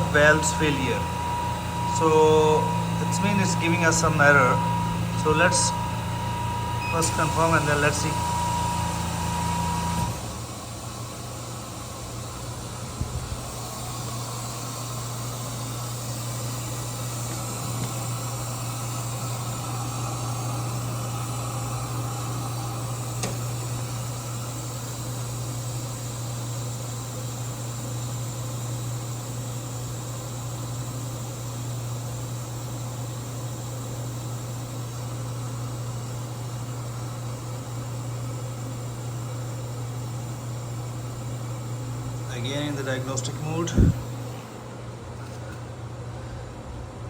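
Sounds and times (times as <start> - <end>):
loud tone: 0.0 - 10.2
air hissing: 0.0 - 45.7
air compressors humming: 0.0 - 47.0.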